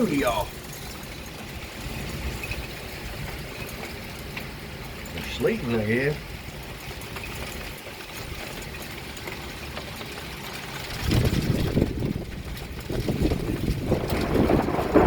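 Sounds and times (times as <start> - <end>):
thunder rumbling: 10.9 - 15.0.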